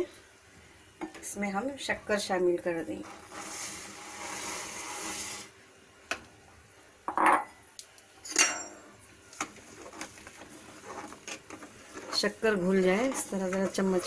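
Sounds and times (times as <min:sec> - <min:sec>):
sugar pouring hiss: 0:03.0 - 0:05.6
metal spoon clanking on pot: 0:08.3 - 0:08.9.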